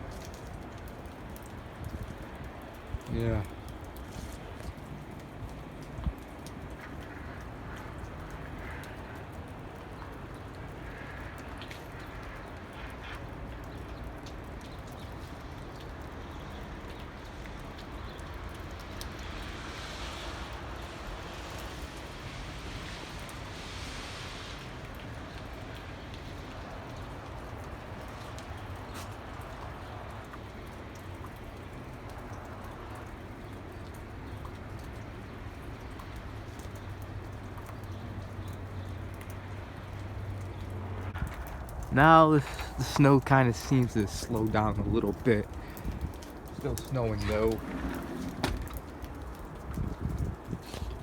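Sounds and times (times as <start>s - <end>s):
low outdoor rumble: 37.0s - 51.0s.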